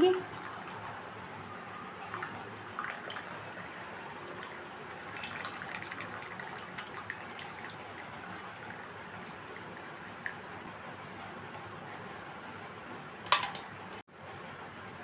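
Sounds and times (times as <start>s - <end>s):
liquid trickling through strainer: 0.2s - 11.1s.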